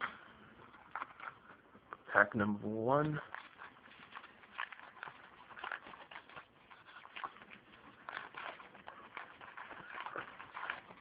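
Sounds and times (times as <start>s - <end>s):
cards rustling: 2.9s - 11.0s
foil wrapper tearing and crinkling: 2.9s - 11.0s.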